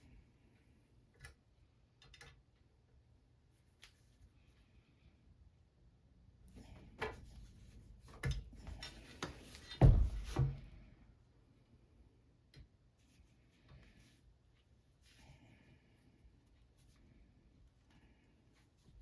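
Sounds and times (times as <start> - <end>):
clicks and knocks of metal parts: 1.1 - 2.7.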